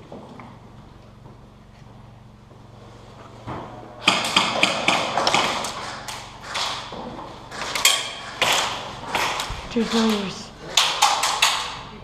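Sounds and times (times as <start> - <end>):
airsoft guns firing: 4.0 - 6.9, 7.5 - 11.8
pellets striking hard surfaces: 4.0 - 11.8.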